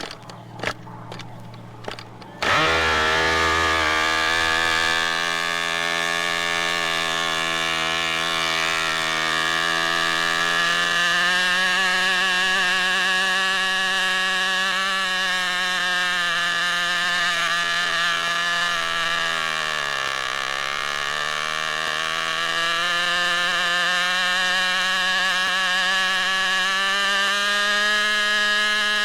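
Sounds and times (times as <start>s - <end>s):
sharp clicks: 0.0s - 2.7s
low hum: 0.0s - 29.0s
machine mechanical drone: 0.0s - 29.0s.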